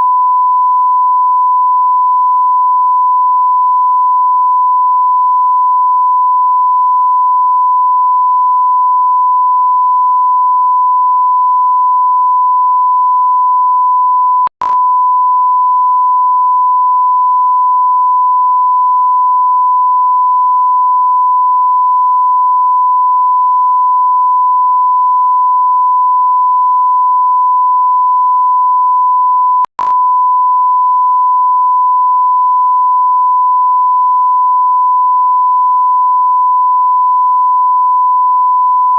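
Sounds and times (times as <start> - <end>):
click: 14.5 - 14.8, 29.6 - 30.0.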